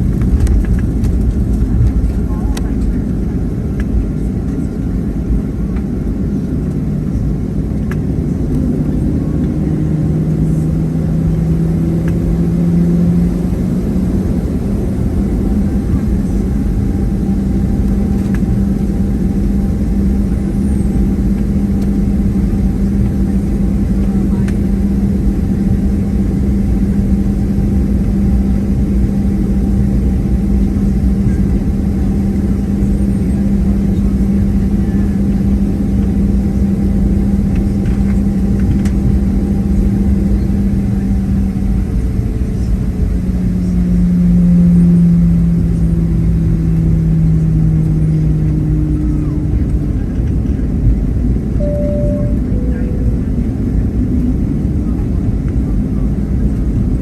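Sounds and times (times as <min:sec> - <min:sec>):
aircraft cabin engine hum: 0:00.0 - 0:57.0.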